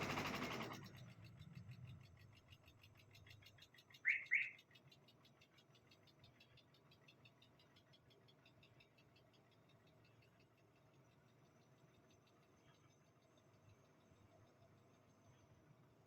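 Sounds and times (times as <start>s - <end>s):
petrol engine running: 0.0s - 0.9s
fast engine ticking: 0.0s - 3.0s.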